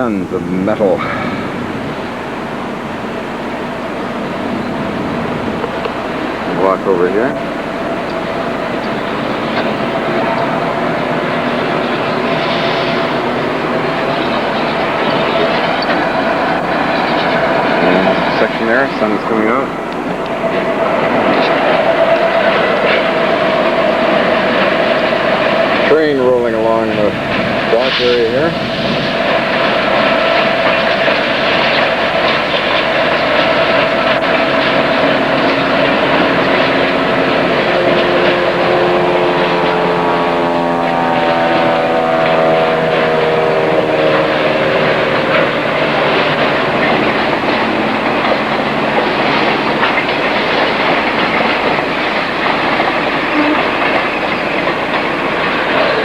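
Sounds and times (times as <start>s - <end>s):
falling pitched whine: 0.0s - 56.0s
train rumbling and rattling: 0.0s - 56.0s.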